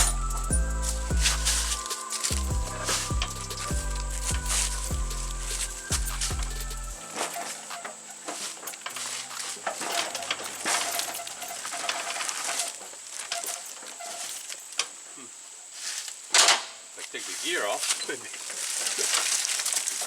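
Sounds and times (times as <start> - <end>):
music: 0.0 - 11.9
clicks and clinks on metal: 6.6 - 14.9.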